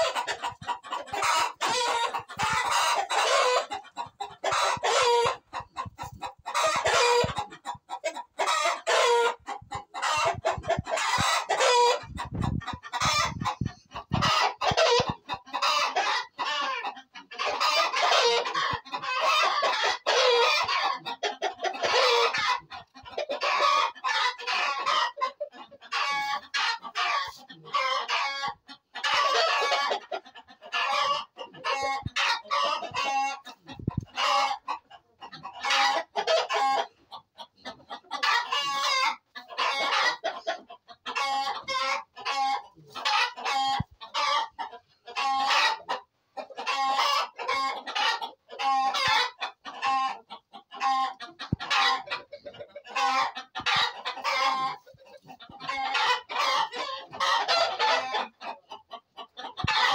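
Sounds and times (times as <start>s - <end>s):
roosters crowing: 0.0s - 5.7s, 6.4s - 7.5s, 8.4s - 9.4s, 10.0s - 12.1s, 14.1s - 16.8s, 17.5s - 22.6s
chickens clucking: 0.0s - 59.9s.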